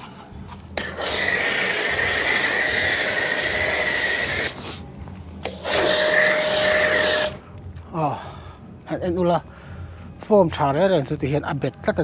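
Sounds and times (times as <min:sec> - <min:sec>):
pressure washer spraying: 0:00.8 - 0:04.7, 0:05.5 - 0:07.4.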